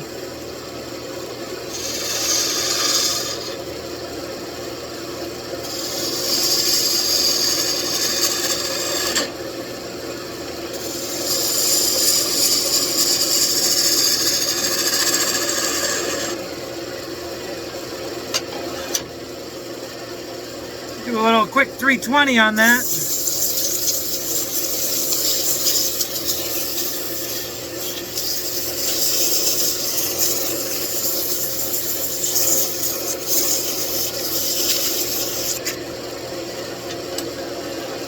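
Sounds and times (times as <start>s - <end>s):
rasping on spinning wood: 5.7s - 9.2s, 22.8s - 35.6s.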